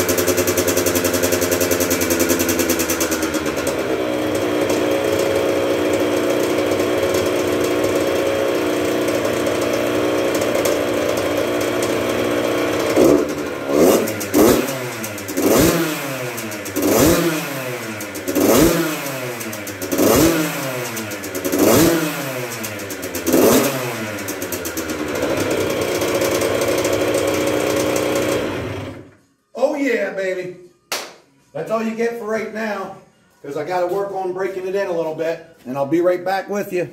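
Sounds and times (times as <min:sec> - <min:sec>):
two-stroke engine idling and revving: 0:00.0 - 0:29.2.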